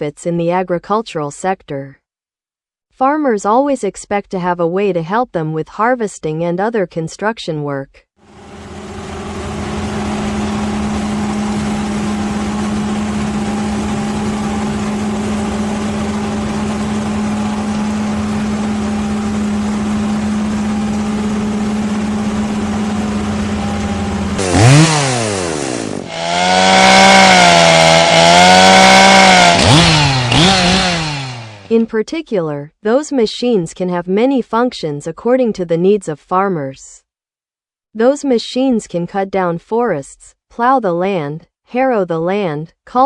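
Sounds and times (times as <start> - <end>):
chainsaw engine revving: 8.6 - 31.8.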